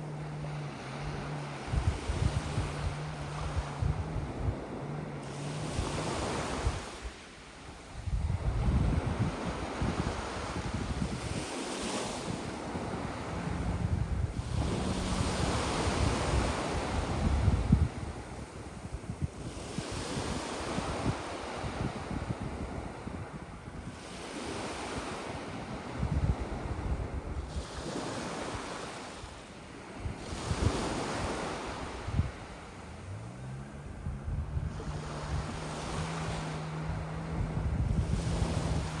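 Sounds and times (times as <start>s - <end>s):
low motor hum: 0.0s - 11.2s, 12.3s - 19.6s, 29.7s - 39.0s
sea waves washing onto shore: 0.0s - 39.0s
wind rumble on microphone: 0.0s - 39.0s
waves breaking on pebbly beach: 5.2s - 7.6s, 27.5s - 33.7s, 38.0s - 39.0s.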